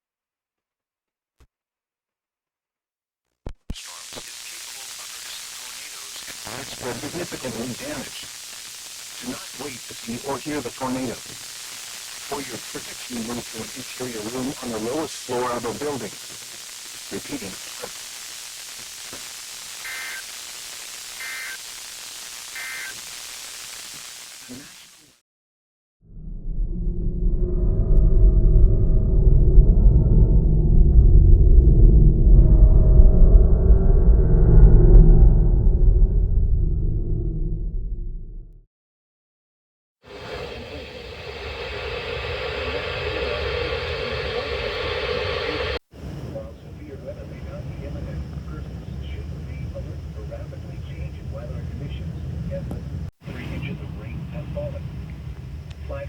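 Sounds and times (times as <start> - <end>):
radio static hiss: 3.5 - 25.2, 40.0 - 56.0
two-tone data bursts: 4.0 - 25.0.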